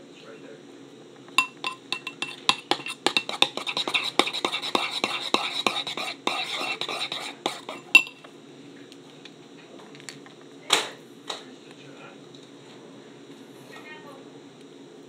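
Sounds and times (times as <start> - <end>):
spoon clinking against bowl: 1.4 - 5.9, 6.5 - 8.3
spoon stirring slime in a bowl: 1.4 - 8.3.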